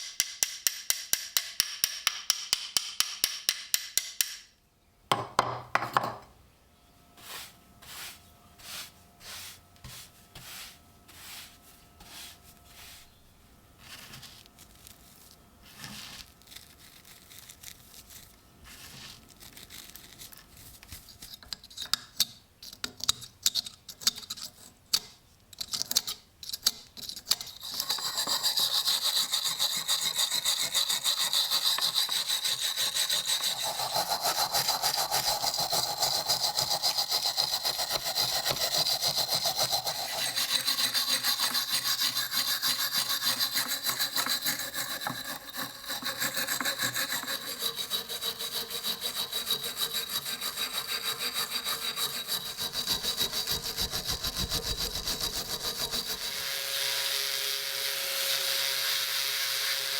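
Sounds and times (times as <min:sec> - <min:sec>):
rubbing strokes on metal: 0:07.2 - 0:13.2, 0:27.5 - 0:56.4
tool rasping on steel knife: 0:27.1 - 0:56.6.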